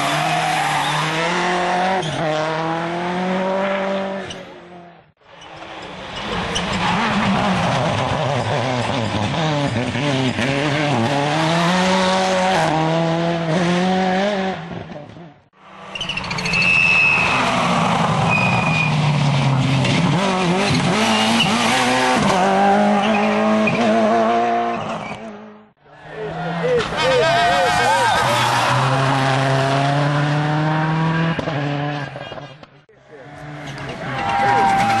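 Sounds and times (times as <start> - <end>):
rally car engines revving: 0.0 - 35.0
tyre squeals: 15.9 - 19.1, 33.6 - 35.0.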